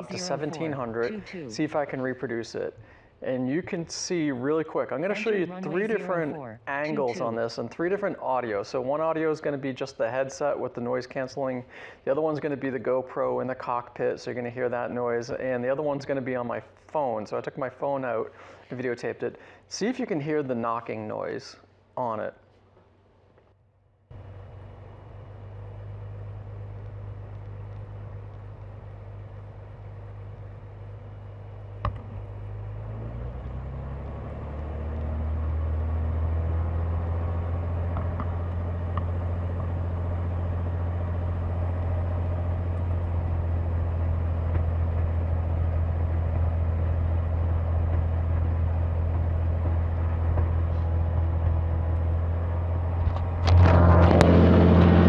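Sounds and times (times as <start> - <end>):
aircraft engine running: 0.0 - 10.6, 24.1 - 55.0.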